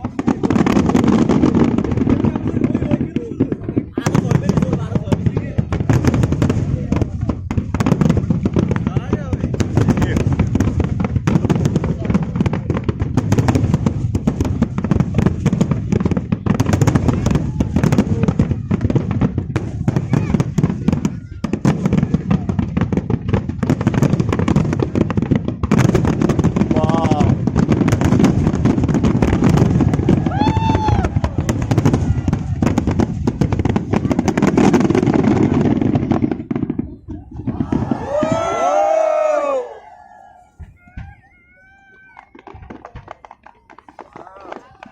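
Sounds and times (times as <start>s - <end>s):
fireworks bangs and crackles: 0.0s - 44.9s.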